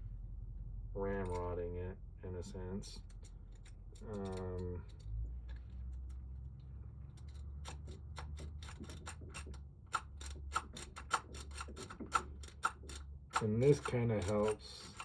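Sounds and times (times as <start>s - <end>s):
lock pick metallic clicks: 7.2s - 15.0s.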